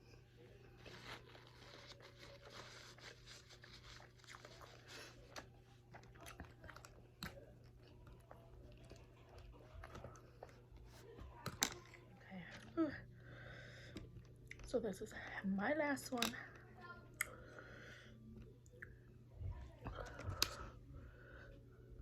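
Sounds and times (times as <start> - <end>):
chewing and crunching: 0.6 - 14.8.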